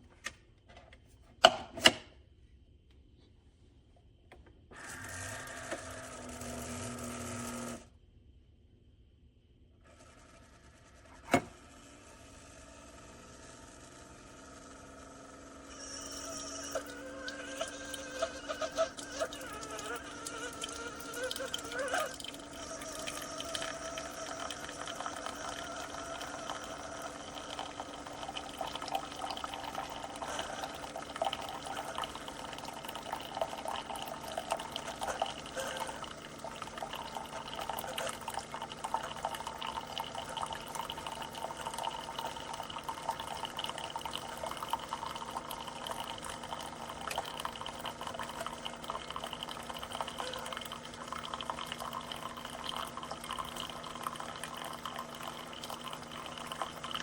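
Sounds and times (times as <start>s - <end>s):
coffee maker pump humming: 4.3s - 7.9s, 9.8s - 57.0s
coffee spluttering into cup: 15.8s - 57.0s.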